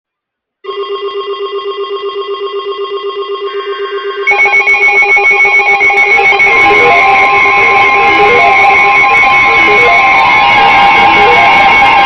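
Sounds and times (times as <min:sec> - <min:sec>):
louder alarm: 0:00.6 - 0:12.0
pulsing electronic alarm tone: 0:00.7 - 0:12.0
steady electronic tone: 0:02.7 - 0:12.0.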